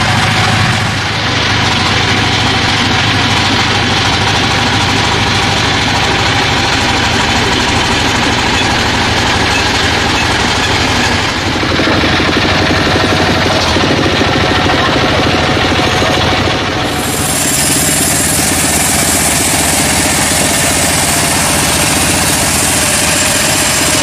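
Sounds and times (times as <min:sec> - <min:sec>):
sawmill saw running: 0:00.0 - 0:24.0.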